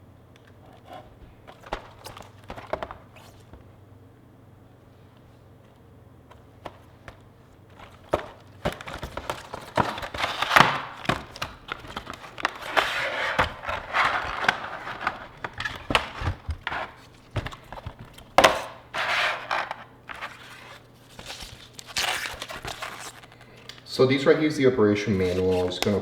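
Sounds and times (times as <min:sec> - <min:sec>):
packaging rustling: 0:00.5 - 0:03.6, 0:06.6 - 0:23.9, 0:25.1 - 0:26.0
cardboard box being opened: 0:07.7 - 0:23.5.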